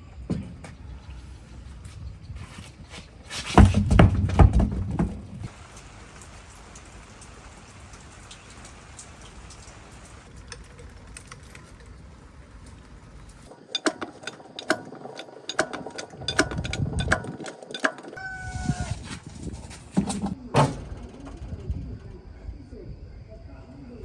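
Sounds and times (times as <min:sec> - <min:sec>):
sharp clicks and clinks: 0:13.2 - 0:18.2.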